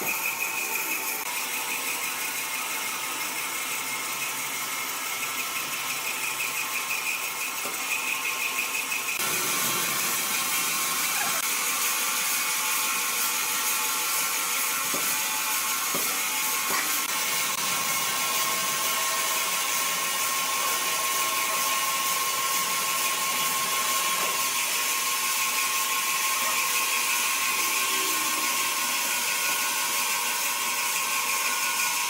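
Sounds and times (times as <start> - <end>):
woodworking machinery whirring: 0.0 - 32.0.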